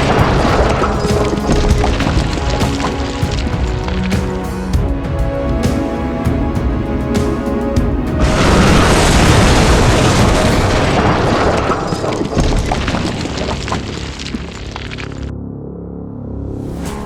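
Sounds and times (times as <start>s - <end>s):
background music: 0.0s - 17.0s
explosion blast: 8.1s - 14.0s.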